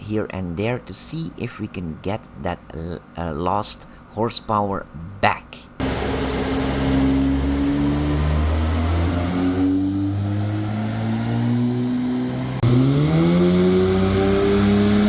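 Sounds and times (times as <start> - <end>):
car engine accelerating: 5.8 - 15.0.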